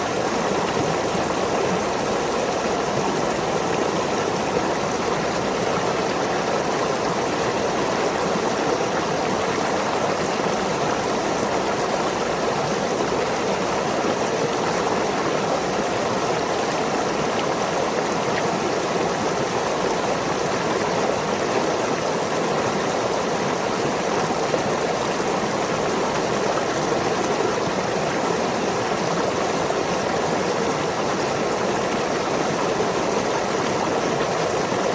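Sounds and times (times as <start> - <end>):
small waterfall rushing: 0.0 - 34.9.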